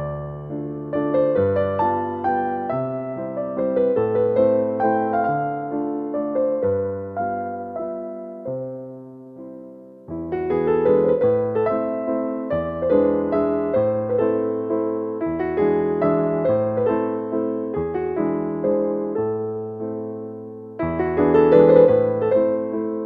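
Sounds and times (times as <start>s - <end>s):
soft piano music: 0.0s - 23.0s.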